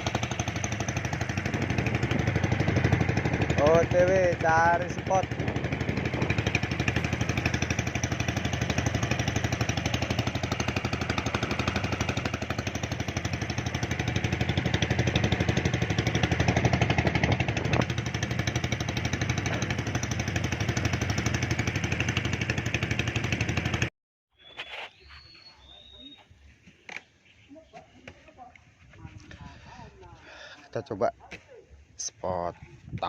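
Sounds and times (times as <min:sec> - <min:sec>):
small motorcycle engine running: 0:00.0 - 0:23.9.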